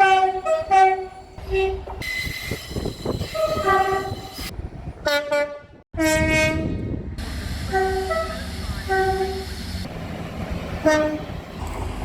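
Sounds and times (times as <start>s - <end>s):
train two-tone horn blasts: 0.0s - 1.9s, 3.4s - 4.4s, 5.0s - 7.0s, 7.6s - 9.6s, 10.8s - 11.4s
train running noise: 0.0s - 12.0s.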